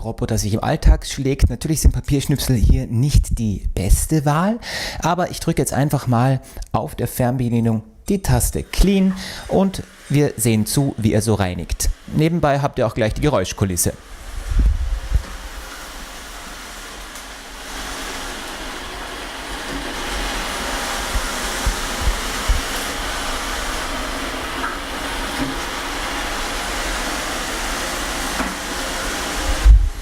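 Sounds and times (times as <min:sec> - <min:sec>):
robot vacuum cleaner whirring: 0:08.3 - 0:30.0
soft low thumps: 0:29.6 - 0:30.0.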